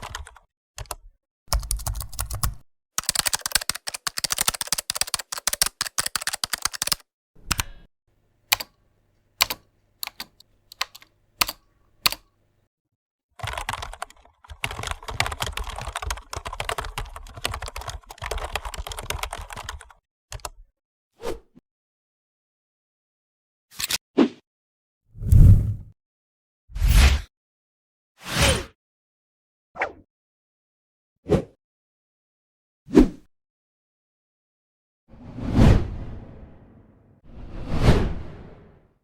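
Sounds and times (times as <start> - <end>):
rapid sharp clicks: 3.0 - 7.0, 9.4 - 12.2.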